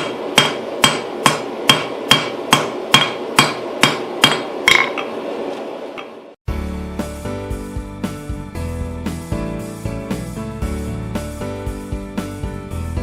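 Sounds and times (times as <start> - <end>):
hammer striking steel on anvil: 0.0 - 5.2.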